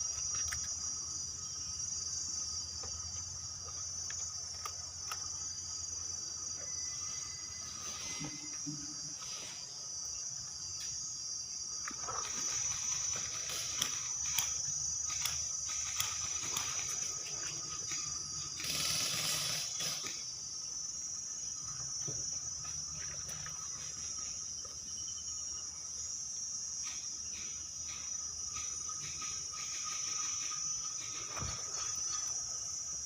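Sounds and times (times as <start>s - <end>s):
insects buzzing: 0.0s - 33.0s
sharp clicks: 12.9s - 17.1s.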